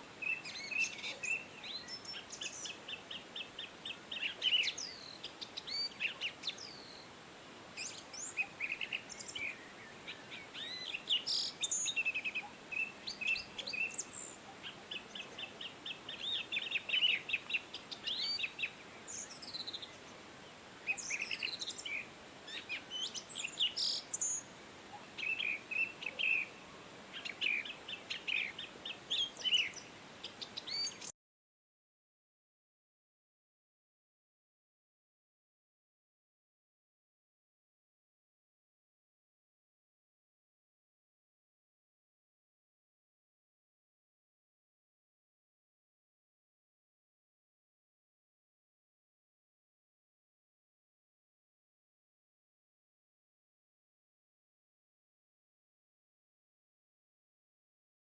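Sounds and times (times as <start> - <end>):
faint steady hiss: 0.0 - 31.1.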